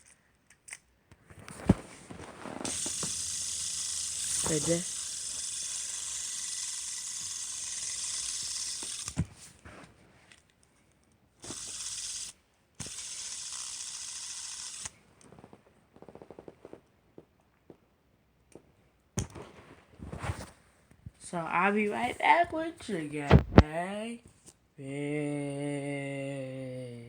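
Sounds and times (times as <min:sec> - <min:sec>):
fidget spinner whirring: 0:01.4 - 0:10.4, 0:11.4 - 0:16.8
fast ticks: 0:02.6 - 0:09.3, 0:11.4 - 0:15.0.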